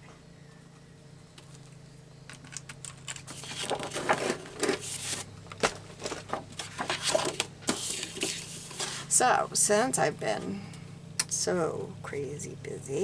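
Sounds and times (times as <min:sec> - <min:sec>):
steady low hum: 0:00.0 - 0:13.0
paper rustling and crinkling: 0:02.3 - 0:09.1.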